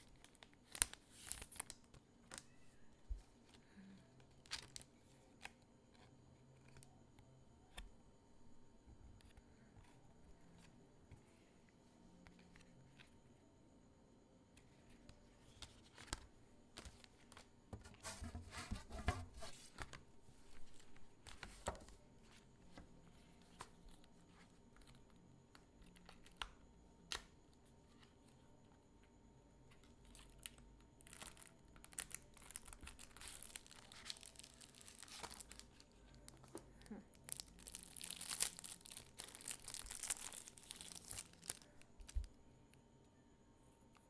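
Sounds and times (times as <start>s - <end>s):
packaging crinkling and tearing: 0.0s - 2.5s, 31.0s - 42.3s.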